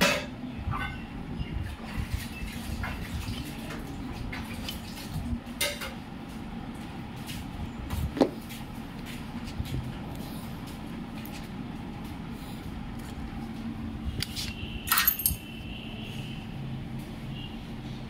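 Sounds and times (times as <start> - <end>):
steady low hum: 0.0 - 18.0
metal tools clinking and knocking: 14.9 - 15.5.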